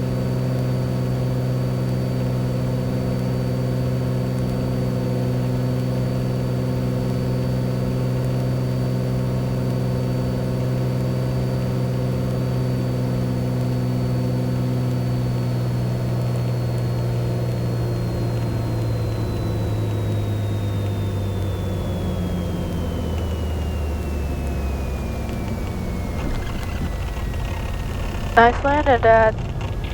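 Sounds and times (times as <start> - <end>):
propeller plane engine droning: 0.0 - 29.9
faint high whine: 17.9 - 29.9.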